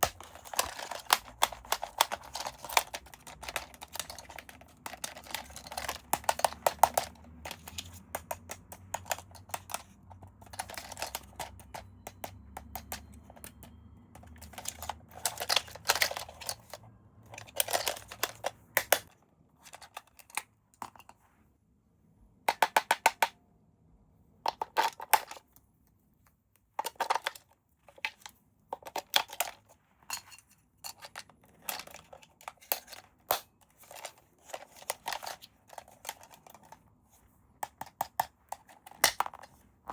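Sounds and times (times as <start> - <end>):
plastic and cardboard crinkling: 0.0 - 20.2.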